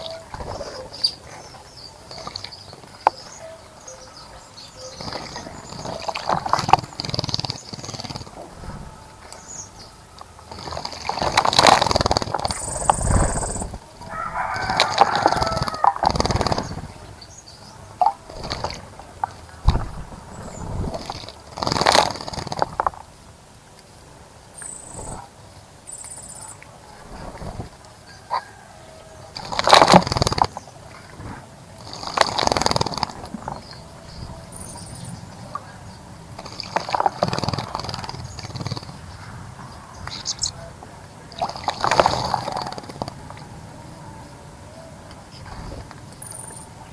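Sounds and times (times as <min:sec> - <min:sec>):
wings fluttering in water: 0:04.8 - 0:17.3, 0:18.0 - 0:23.0, 0:27.0 - 0:33.6, 0:41.3 - 0:43.5
bird splashing in water: 0:10.5 - 0:17.2
rooster crowing: 0:13.9 - 0:16.4, 0:27.7 - 0:29.6.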